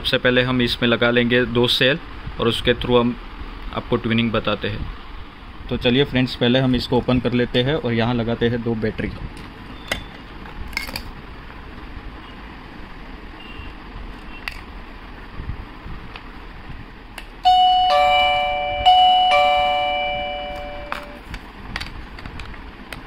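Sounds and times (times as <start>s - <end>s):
doorbell ding-dong chime: 17.4s - 21.2s.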